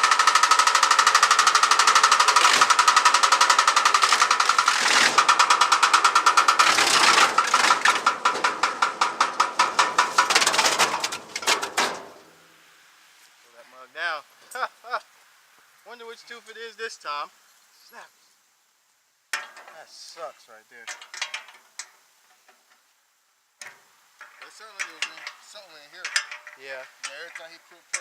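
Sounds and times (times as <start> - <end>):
stump grinder knocking: 0.0 - 12.0.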